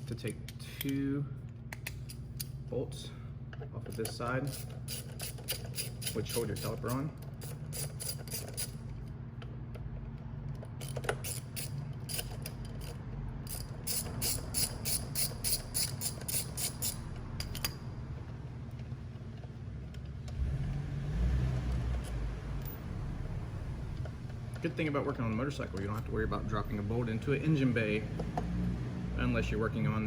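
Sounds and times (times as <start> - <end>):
socket ratchet clicking: 1.7 - 2.6, 4.4 - 8.8, 10.8 - 17.8
low rumble: 20.3 - 24.6.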